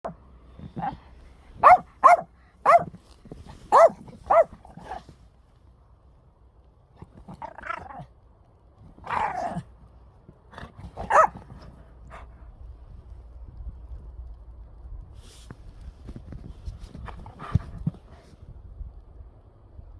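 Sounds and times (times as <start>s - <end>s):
dogs barking: 1.6s - 2.9s, 3.7s - 5.0s, 10.9s - 11.5s.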